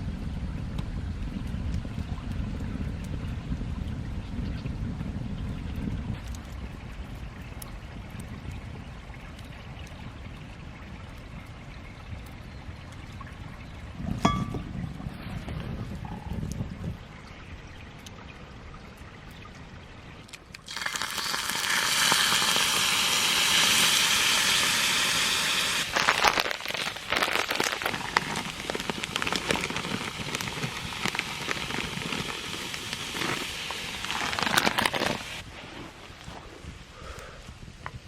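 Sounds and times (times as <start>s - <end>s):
oil crackling and spattering: 20.3s - 36.4s
food sizzling in hot pan: 20.7s - 35.4s.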